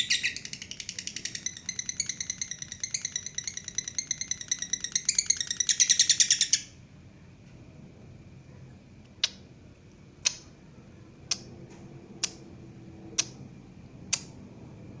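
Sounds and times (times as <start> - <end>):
bird chatter: 0.0 - 6.7
bird chip calls: 0.0 - 6.7.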